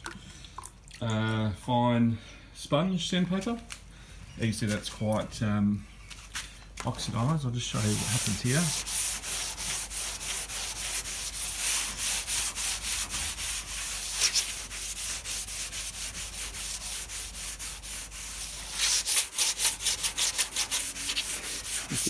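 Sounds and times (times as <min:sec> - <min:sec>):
sandpaper rubbing on car paint: 0:07.8 - 0:22.0.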